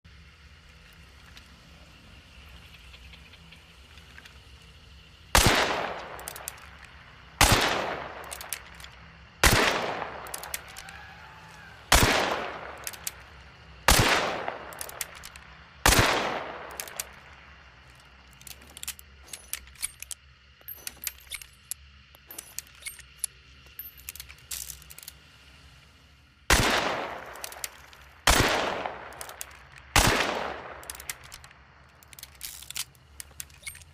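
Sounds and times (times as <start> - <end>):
metallic clicks and rattles: 6.0 - 7.0, 8.2 - 9.1, 10.1 - 11.0, 12.7 - 13.3, 14.6 - 15.5, 16.6 - 25.2, 27.2 - 28.2, 29.0 - 29.9, 30.6 - 33.9.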